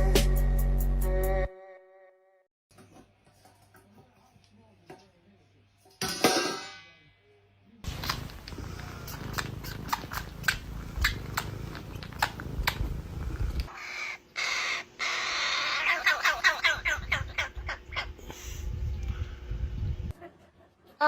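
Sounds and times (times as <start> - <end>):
bird calling harshly: 13.7 - 17.8.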